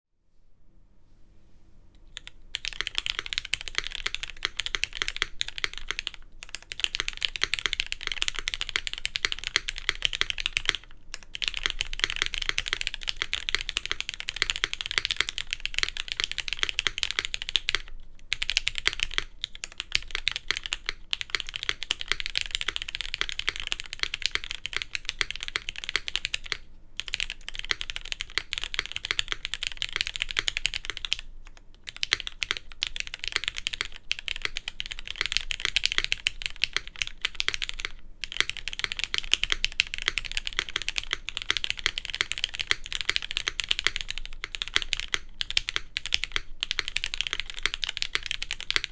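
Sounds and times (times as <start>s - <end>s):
mechanical keyboard typing: 2.1s - 48.9s.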